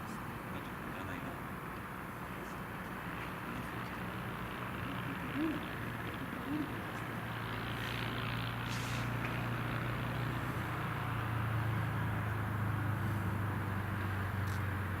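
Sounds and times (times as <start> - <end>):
light plane engine drone: 0.0 - 15.0.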